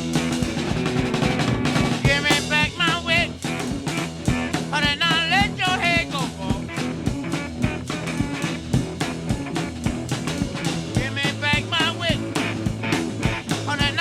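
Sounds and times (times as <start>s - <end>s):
electric guitar: 0.0s - 14.0s
rock music with steady beat: 0.0s - 14.0s
person singing: 2.0s - 3.4s, 4.7s - 6.8s, 11.0s - 12.4s, 13.6s - 14.0s.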